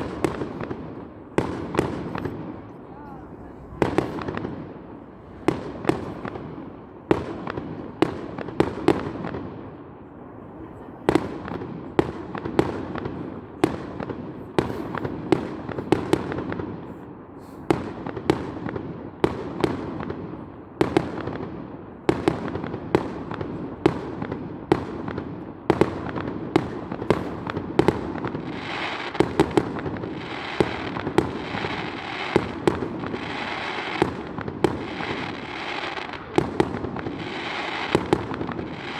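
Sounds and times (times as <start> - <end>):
dense crackling hiss: 26.7 - 38.9.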